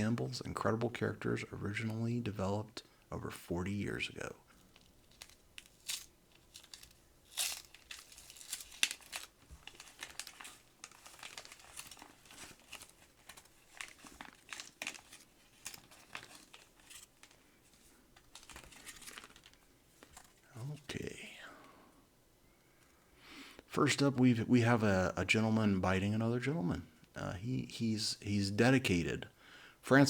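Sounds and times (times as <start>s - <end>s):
paper wrapper tearing and crinkling: 4.7s - 20.3s.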